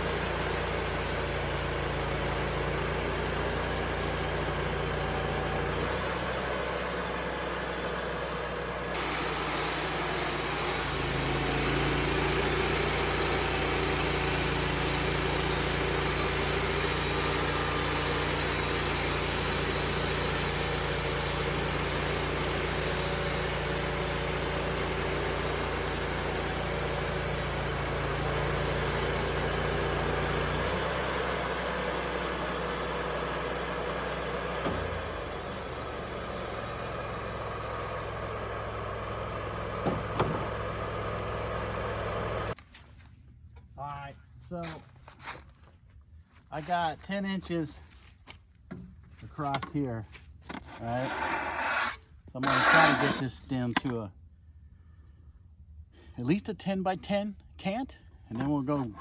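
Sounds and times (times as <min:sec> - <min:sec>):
sawmill engine humming: 0:00.0 - 0:42.6, 0:50.9 - 0:53.8.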